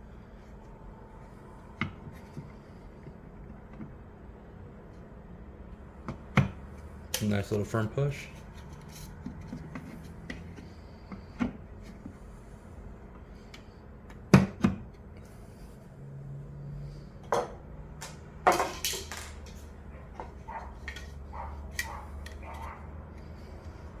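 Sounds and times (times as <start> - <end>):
small parts knocking and clicking: 18.0 - 19.6.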